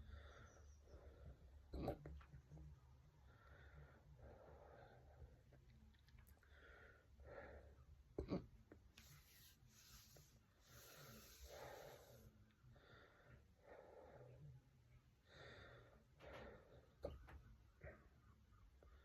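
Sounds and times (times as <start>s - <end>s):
faint breathing: 0.0s - 1.7s, 3.1s - 5.5s, 6.4s - 7.9s, 9.0s - 14.6s, 15.2s - 18.1s.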